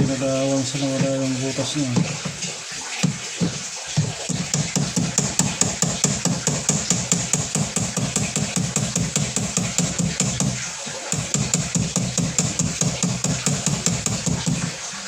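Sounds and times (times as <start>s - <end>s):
fast electronic beat music: 3.1s - 14.8s.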